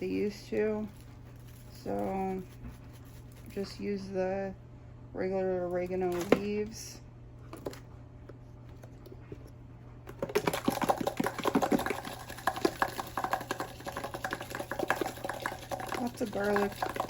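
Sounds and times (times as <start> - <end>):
dried herbs shaken from a jar: 0.1 - 3.8, 10.5 - 17.0.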